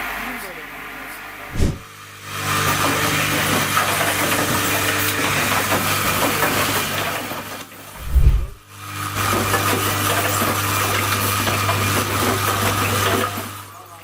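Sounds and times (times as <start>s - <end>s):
short low thud: 1.5s - 1.9s, 8.0s - 8.6s.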